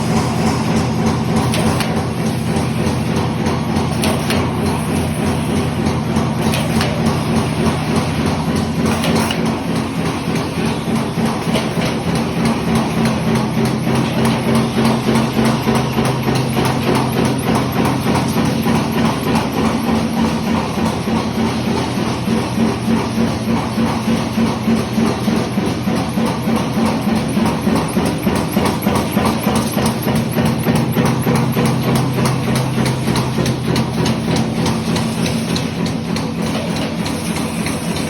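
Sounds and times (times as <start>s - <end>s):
roll-forming machine running: 0.0s - 38.0s.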